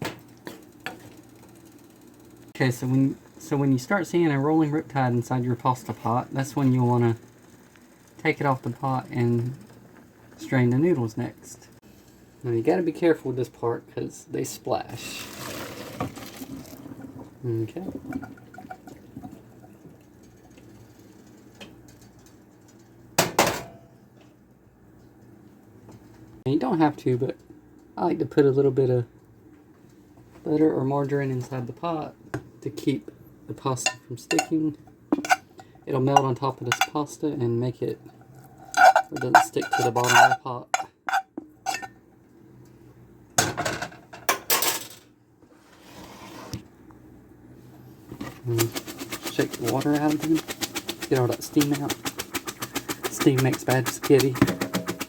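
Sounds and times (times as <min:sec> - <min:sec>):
metal pot clanks: 0:33.8 - 0:34.6, 0:35.2 - 0:37.0, 0:38.1 - 0:42.0, 0:53.9 - 0:55.0.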